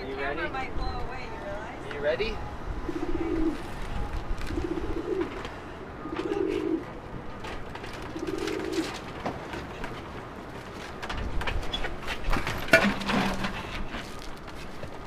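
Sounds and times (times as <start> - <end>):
pigeons cooing: 2.8 - 7.0, 8.0 - 9.0.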